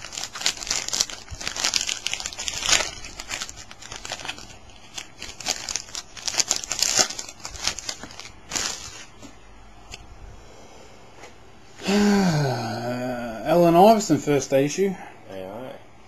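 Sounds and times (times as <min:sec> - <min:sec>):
card pack wrapper crinkling: 0:00.0 - 0:09.3.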